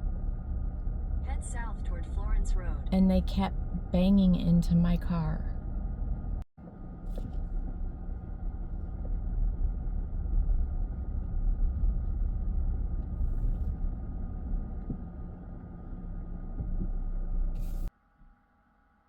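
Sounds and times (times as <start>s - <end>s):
engine and tyre rumble: 0.0s - 17.9s
faint constant hum: 0.0s - 19.0s.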